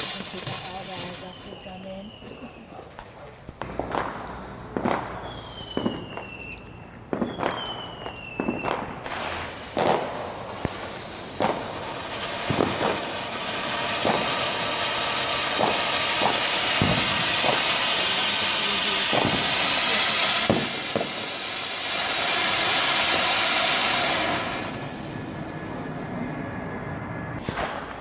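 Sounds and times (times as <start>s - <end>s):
firework hissing: 0.0s - 2.7s, 3.4s - 25.6s, 27.4s - 28.0s
firework sharp cracks: 0.0s - 25.3s, 27.4s - 28.0s.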